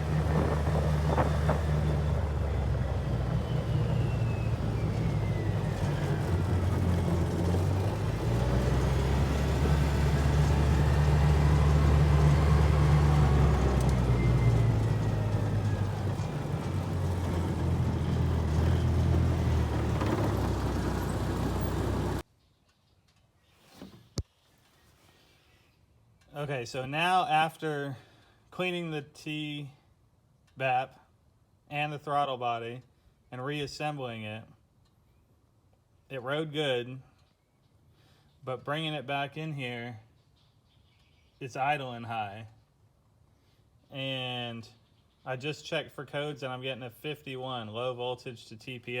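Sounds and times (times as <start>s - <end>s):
engine running steadily: 0.0s - 22.2s.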